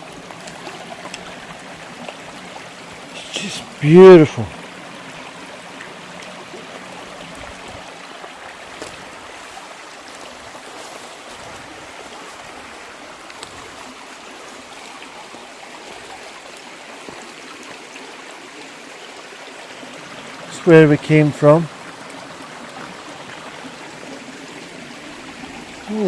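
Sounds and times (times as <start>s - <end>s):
water flowing over stones: 0.0s - 26.0s.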